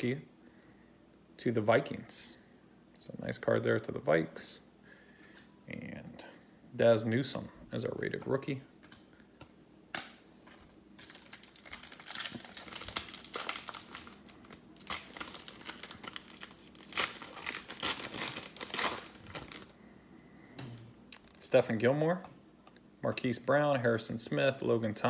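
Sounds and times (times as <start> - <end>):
wrapper crinkling and tearing: 11.0 - 19.8.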